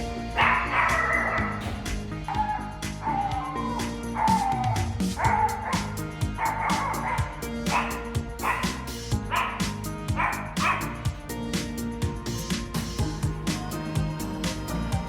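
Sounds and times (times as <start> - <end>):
background music: 0.0 - 15.0
dog barking: 0.4 - 1.8, 4.2 - 11.0.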